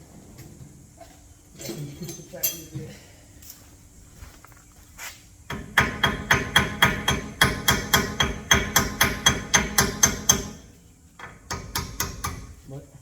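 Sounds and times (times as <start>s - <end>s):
hammer striking metal: 5.5s - 10.6s, 11.2s - 12.6s.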